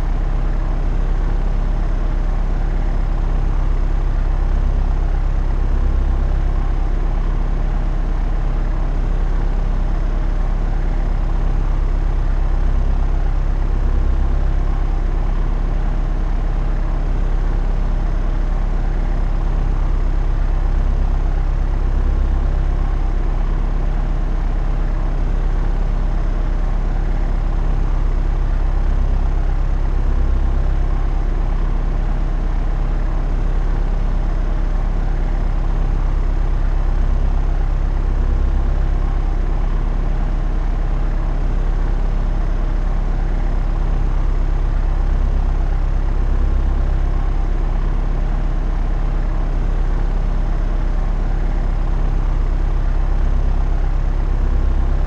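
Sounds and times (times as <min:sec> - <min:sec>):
propeller aeroplane engine drone: 0:00.0 - 0:55.0.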